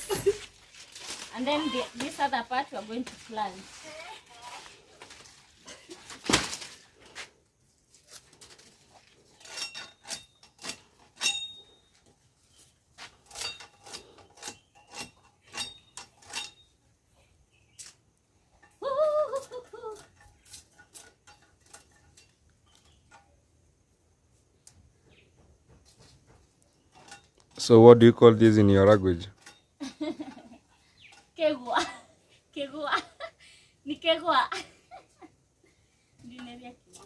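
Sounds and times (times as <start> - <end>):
machete chopping sugarcane: 6.1 - 6.8.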